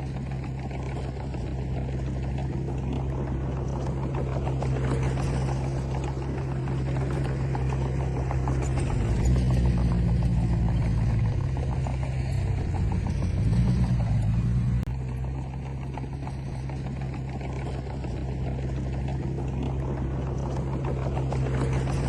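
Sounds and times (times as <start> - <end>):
diesel engine droning: 0.0 - 22.0.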